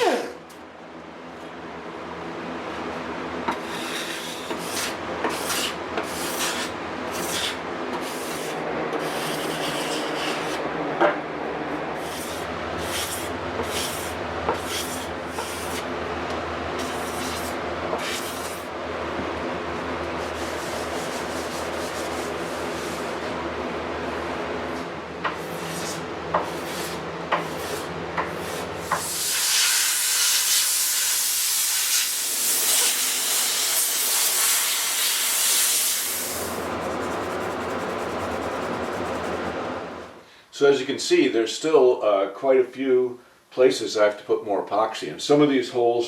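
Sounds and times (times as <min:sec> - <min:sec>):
card scraper scraping wood: 0:03.5 - 0:10.6, 0:12.0 - 0:15.9.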